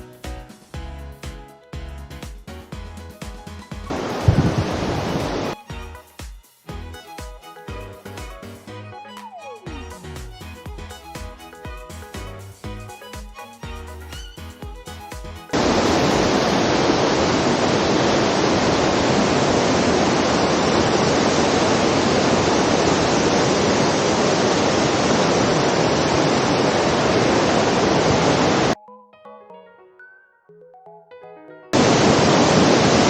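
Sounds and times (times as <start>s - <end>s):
background music: 0.0s - 16.9s, 28.7s - 32.1s
waterfall rushing: 3.9s - 5.6s, 15.5s - 28.8s, 31.8s - 33.0s.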